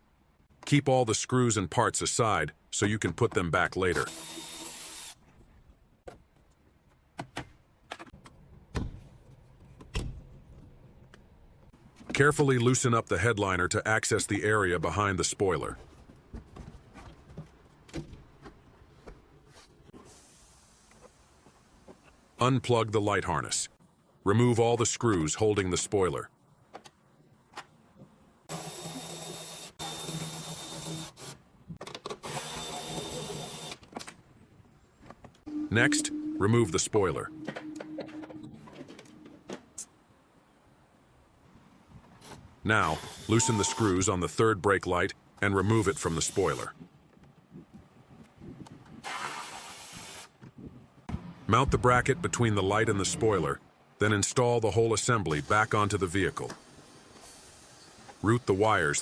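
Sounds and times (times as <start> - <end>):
power drill whirring: 4.1 - 5.2, 32.2 - 33.8, 43.0 - 43.3
parts clicking and knocking: 6.0 - 11.3, 31.8 - 32.4.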